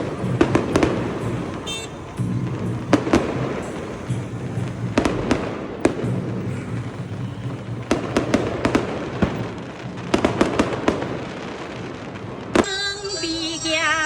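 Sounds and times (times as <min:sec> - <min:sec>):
music playing: 0:00.0 - 0:10.4
crackling hiss of fireworks: 0:00.0 - 0:14.0
fireworks bangs: 0:00.0 - 0:14.0.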